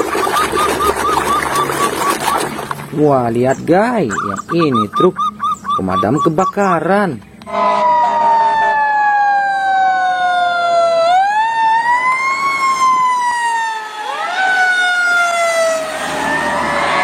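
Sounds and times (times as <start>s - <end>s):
fire engine siren wailing: 7.4s - 17.0s.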